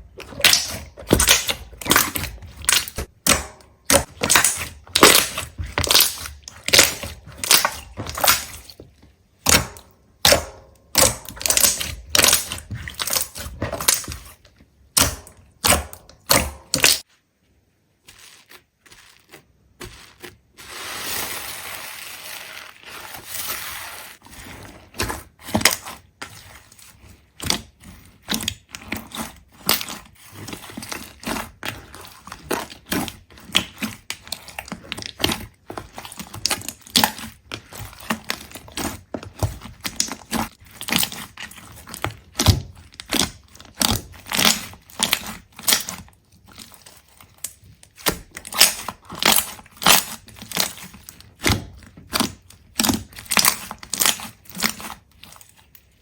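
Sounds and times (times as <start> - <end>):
brittle cracks and crunches: 33.4 - 56.0.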